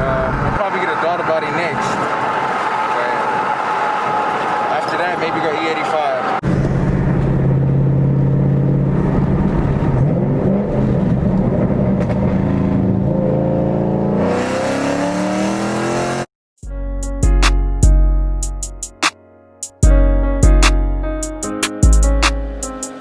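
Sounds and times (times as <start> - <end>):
car exhaust drone: 0.0 - 16.2
guitar music: 16.6 - 23.0.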